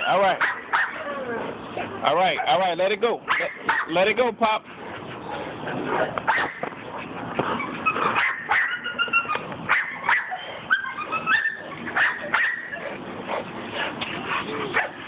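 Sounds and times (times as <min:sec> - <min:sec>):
dog whining and yipping: 0:00.0 - 0:01.5, 0:07.5 - 0:12.9.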